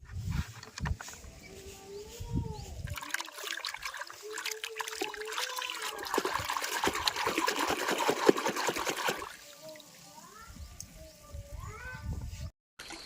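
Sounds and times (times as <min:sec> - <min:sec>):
water running and splashing: 0:02.9 - 0:10.3.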